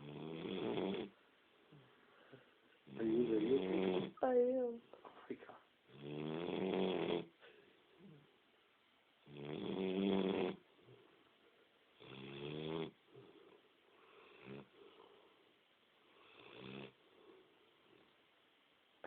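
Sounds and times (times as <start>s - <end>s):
person snoring: 2.9s - 4.2s, 9.2s - 10.6s.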